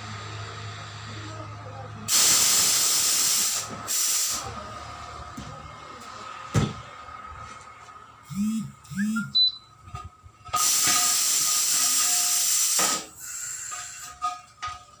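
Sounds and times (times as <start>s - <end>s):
compressed air hissing: 2.1s - 4.4s, 10.6s - 14.2s.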